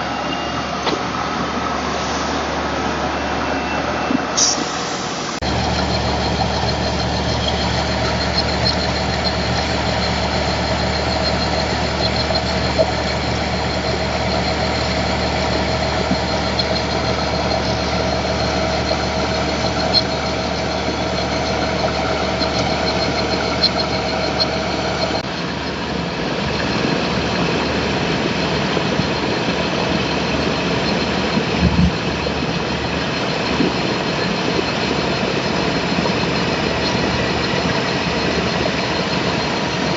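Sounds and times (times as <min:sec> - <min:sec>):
train engine idling: 0:04.2 - 0:39.9.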